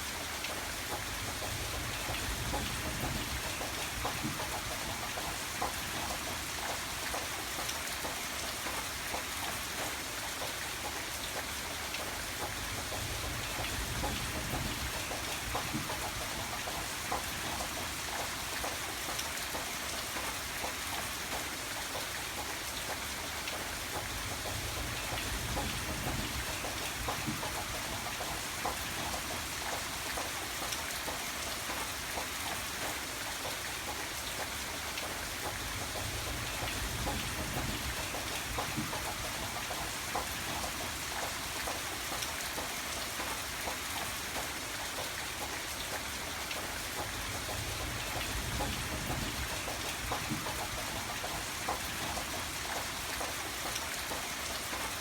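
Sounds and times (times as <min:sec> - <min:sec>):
steady rain hiss: 0:00.0 - 0:55.0
raindrops ticking: 0:00.1 - 0:55.0.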